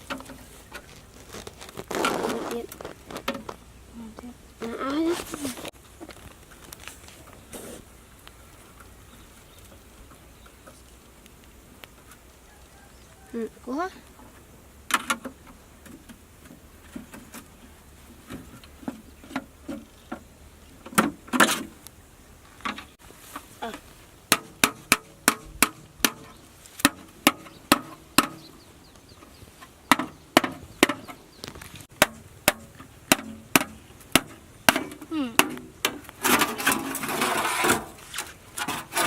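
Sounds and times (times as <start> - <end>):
sharp knocks: 24.3 - 28.6, 29.9 - 31.2, 31.9 - 37.0.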